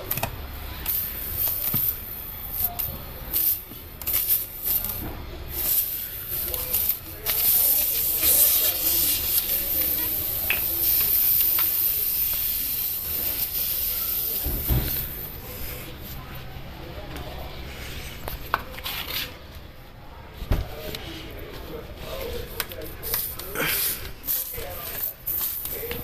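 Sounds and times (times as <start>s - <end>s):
air hissing out of tyre: 0.8s - 15.9s, 23.1s - 26.0s.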